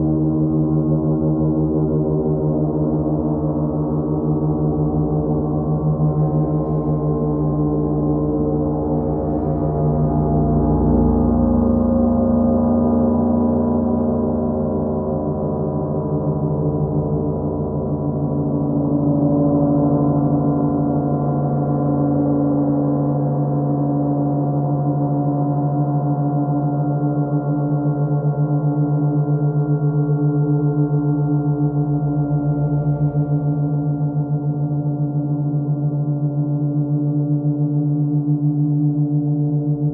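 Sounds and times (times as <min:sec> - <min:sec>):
gong rubbed with friction mallet: 0:06.1 - 0:12.8.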